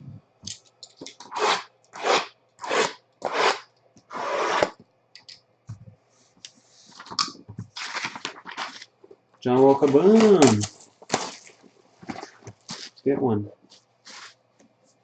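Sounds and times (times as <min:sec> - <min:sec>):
card packs torn open rustling: 0:07.0 - 0:09.0, 0:09.6 - 0:13.0.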